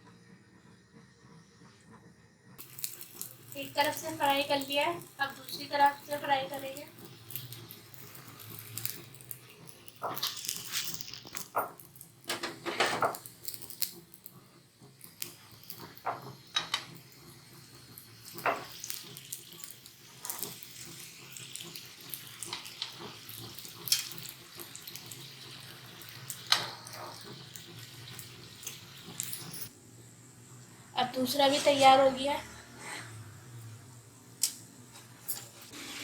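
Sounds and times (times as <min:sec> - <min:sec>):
oil crackles: 0:02.6 - 0:29.7
frying sizzle: 0:02.6 - 0:36.0.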